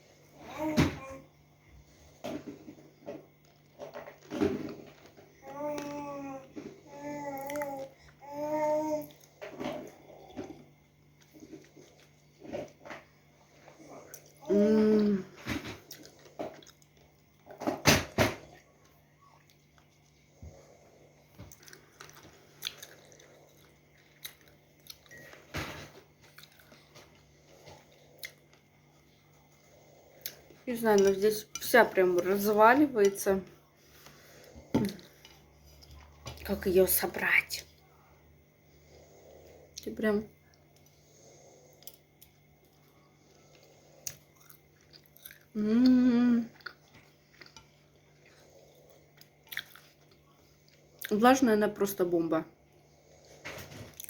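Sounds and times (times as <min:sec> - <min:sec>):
chewing crunchy food: 0:09.0 - 0:14.4, 0:15.3 - 0:17.6, 0:18.5 - 0:31.6, 0:39.0 - 0:45.6, 0:46.4 - 0:51.2
hummed mmm of enjoyment: 0:14.4 - 0:15.3, 0:45.2 - 0:46.7.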